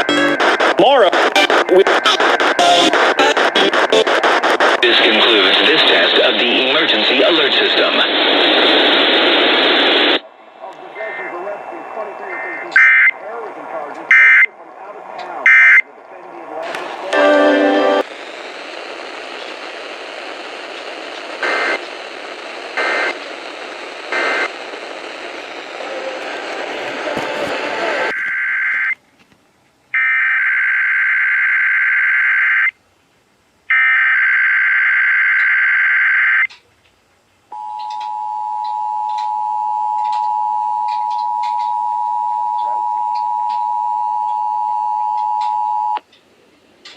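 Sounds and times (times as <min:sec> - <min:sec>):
warbling data bursts: 0:00.0 - 0:04.8
data bursts: 0:00.0 - 0:05.6
radio static hiss: 0:00.0 - 0:28.9.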